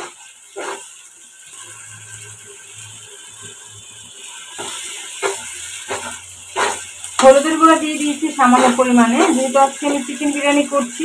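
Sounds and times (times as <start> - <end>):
spatula scraping a pot: 0.0 - 0.9, 4.6 - 7.3
faint sizzle: 0.0 - 11.0.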